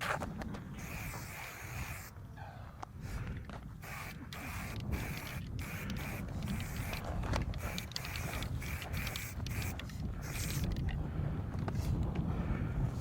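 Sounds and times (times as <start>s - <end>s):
heavy rhythmic breathing: 3.0s - 13.0s.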